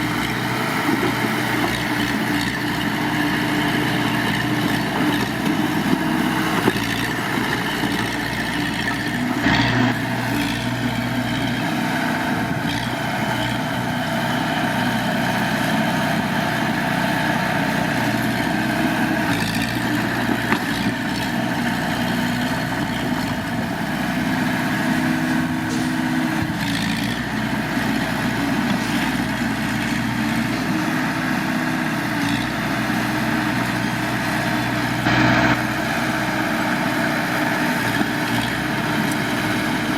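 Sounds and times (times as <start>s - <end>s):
heavy machinery diesel engine: 0.0s - 39.9s.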